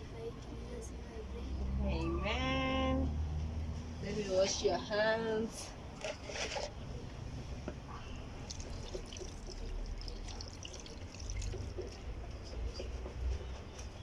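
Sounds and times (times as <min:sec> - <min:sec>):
water splashing into a basin: 0:08.3 - 0:12.0.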